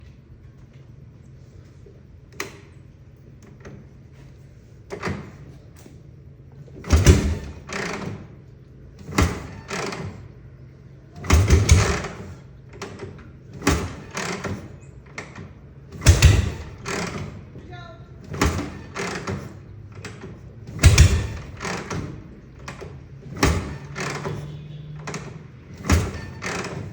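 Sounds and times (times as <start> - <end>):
motorcycle kick-start kicks: 6.8 - 8.4, 9.0 - 10.4, 11.2 - 17.5, 18.3 - 26.9
engine coughing and popping: 16.0 - 17.4.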